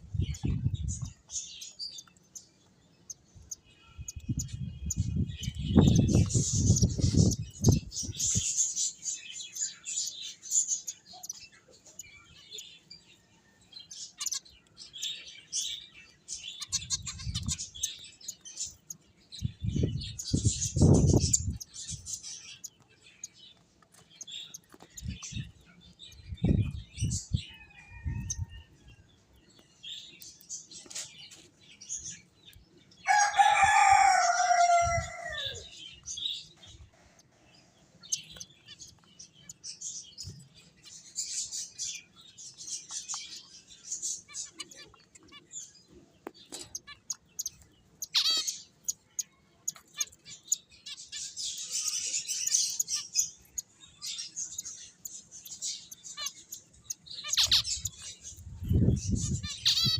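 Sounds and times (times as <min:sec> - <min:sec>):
finches chirping: 0:00.1 - 0:12.9, 0:13.9 - 0:28.6, 0:38.0 - 0:59.9
rooster crowing: 0:33.0 - 0:35.7.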